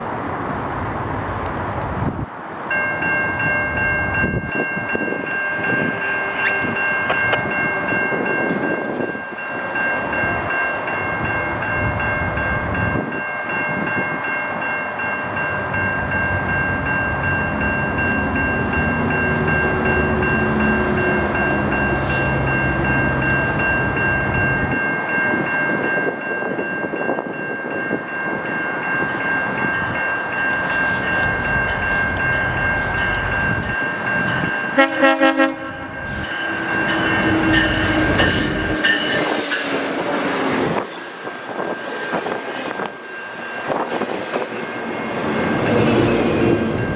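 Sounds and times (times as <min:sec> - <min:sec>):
train rumbling past: 0:00.0 - 0:46.9
locomotive air horn chord: 0:34.7 - 0:36.3.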